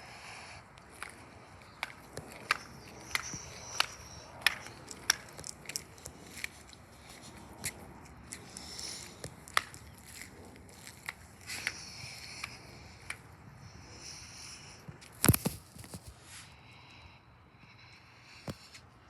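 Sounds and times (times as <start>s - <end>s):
sharp ticks and taps: 0.8s - 13.8s.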